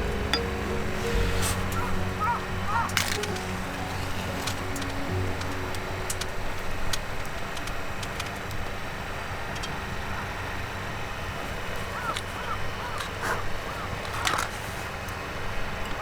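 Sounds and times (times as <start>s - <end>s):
sharp crackles: 0.0s - 9.0s
crow cawing: 1.8s - 2.9s.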